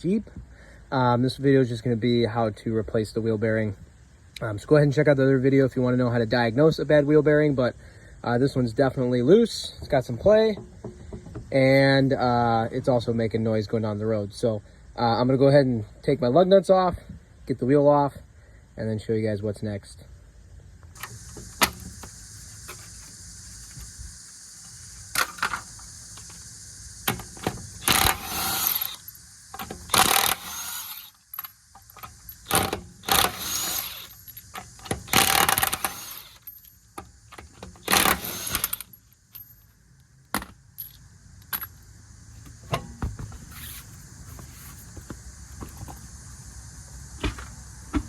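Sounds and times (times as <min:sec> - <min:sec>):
impact wrench bursts: 0:21.0 - 0:23.9, 0:24.6 - 0:36.8, 0:37.4 - 0:39.6.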